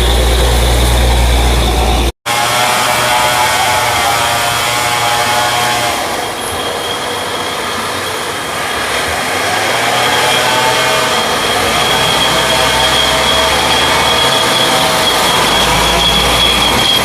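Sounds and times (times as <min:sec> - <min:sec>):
diesel truck engine under load: 0:00.0 - 0:02.1
steady high whine: 0:00.0 - 0:02.1.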